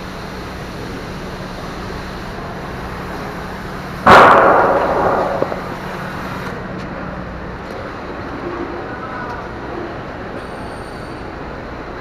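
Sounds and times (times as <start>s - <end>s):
steady background hum: 0.0s - 12.0s
loud bang with ringing tail: 4.1s - 6.4s.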